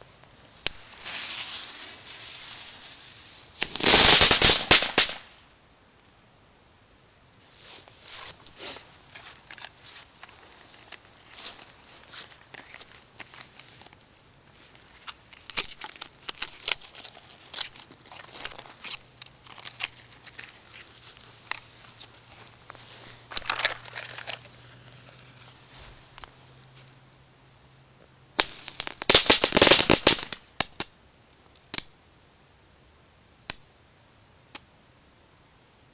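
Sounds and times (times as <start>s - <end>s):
crackling fireworks: 0.6s - 5.4s, 21.2s - 25.7s, 28.4s - 30.9s
firework pops: 3.6s - 5.4s, 28.4s - 30.9s.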